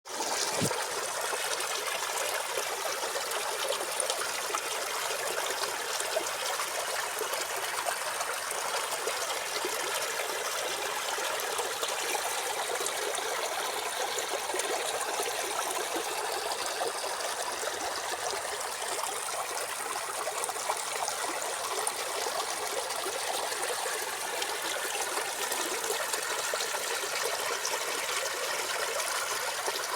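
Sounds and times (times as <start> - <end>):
water trickling: 0.1 - 29.9.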